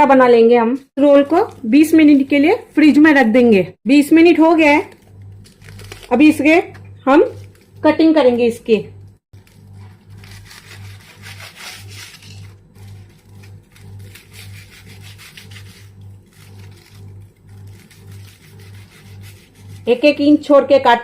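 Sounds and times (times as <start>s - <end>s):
low pulsing hum: 3.8s - 21.0s
knife sawing through bread roll: 9.4s - 20.0s.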